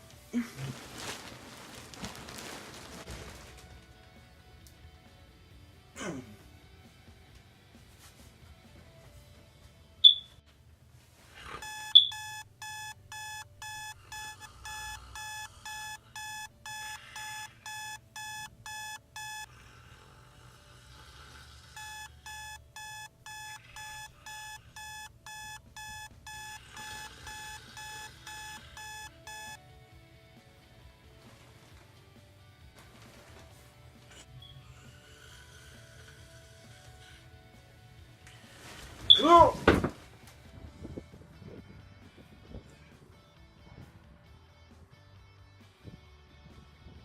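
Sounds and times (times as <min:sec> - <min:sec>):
alarm clock beeping: 0:10.0 - 0:10.3, 0:11.6 - 0:19.5, 0:21.8 - 0:29.6.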